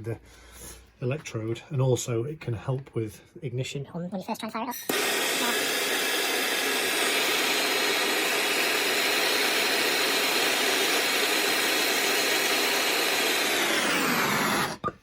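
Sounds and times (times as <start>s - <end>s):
hot-air gun blowing: 4.9s - 14.9s.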